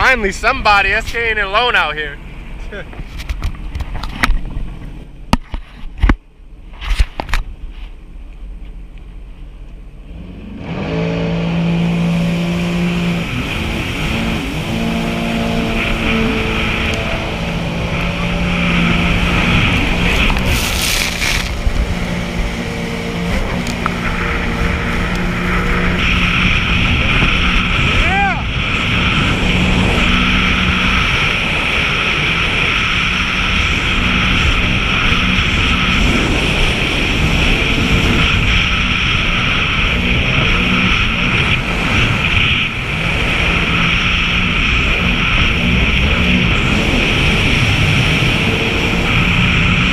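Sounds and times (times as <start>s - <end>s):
personal watercraft engine running: 0.0s - 49.9s
wind: 0.0s - 49.9s
water rushing: 10.0s - 49.9s.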